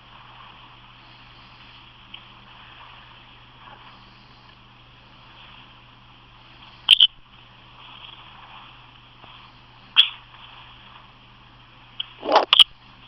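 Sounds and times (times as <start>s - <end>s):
steady low hum: 0.0s - 13.0s
person hiccuping: 12.2s - 12.6s.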